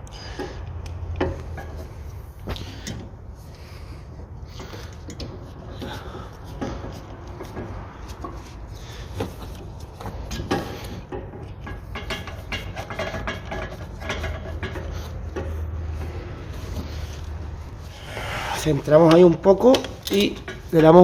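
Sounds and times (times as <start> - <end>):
metallic knocks and clinks: 20.0 - 20.6.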